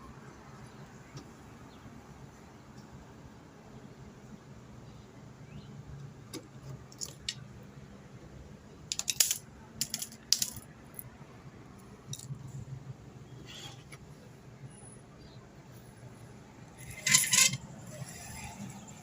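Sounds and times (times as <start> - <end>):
small metal objects clinking: 8.9 - 11.0, 16.8 - 17.6.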